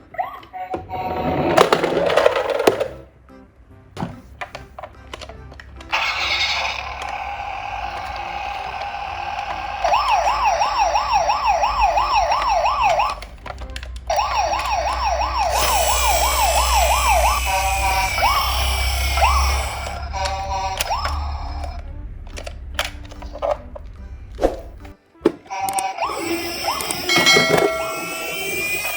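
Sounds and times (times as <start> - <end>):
electronic toy sirens: 5.9 - 23.6, 25.5 - 28.9.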